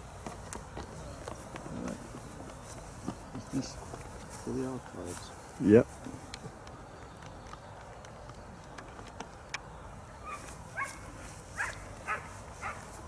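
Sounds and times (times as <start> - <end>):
dog barking: 10.3 - 12.9.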